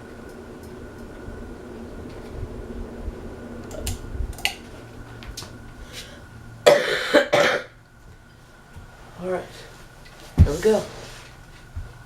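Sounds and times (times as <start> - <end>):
fan clicks: 0.0 - 6.6, 7.7 - 12.0
ceiling fan humming: 0.0 - 12.0
person coughing: 6.7 - 7.7.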